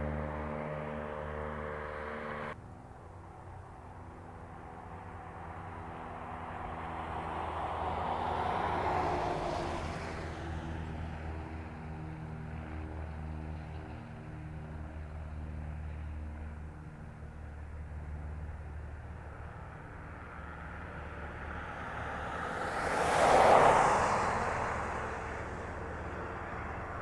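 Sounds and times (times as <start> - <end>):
aeroplane engines droning: 0.0 - 27.0.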